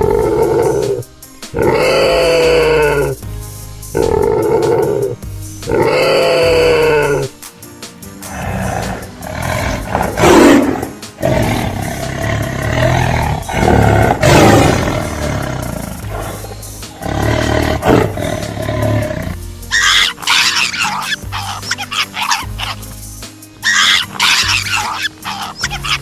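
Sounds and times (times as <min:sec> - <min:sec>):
big cat roaring and growling: 0:00.0 - 0:03.2, 0:04.0 - 0:07.3, 0:08.3 - 0:21.6
background music: 0:00.0 - 0:26.0
higher-pitched animal call: 0:01.6 - 0:03.2, 0:04.0 - 0:07.3, 0:17.0 - 0:22.8, 0:23.6 - 0:26.0.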